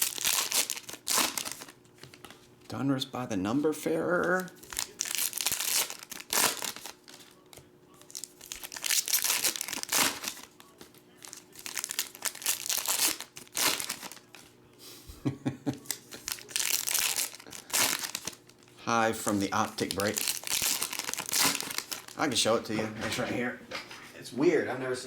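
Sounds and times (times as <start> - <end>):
card pack wrappers crinkling and tearing: 0.0 - 2.5, 3.9 - 14.6, 15.7 - 22.5.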